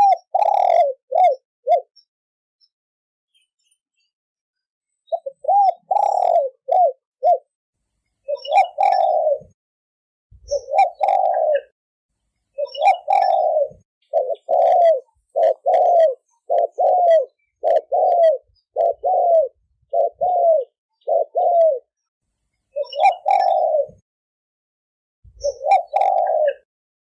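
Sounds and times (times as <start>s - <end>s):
dove cooing: 0.0s - 1.9s, 5.1s - 7.5s, 8.3s - 9.6s, 10.4s - 11.7s, 12.6s - 21.9s, 22.8s - 24.0s, 25.3s - 26.7s.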